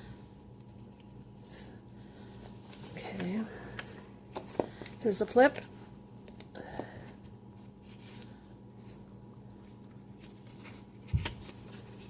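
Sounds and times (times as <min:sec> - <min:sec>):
paper pages rustling: 0:07.5 - 0:12.0.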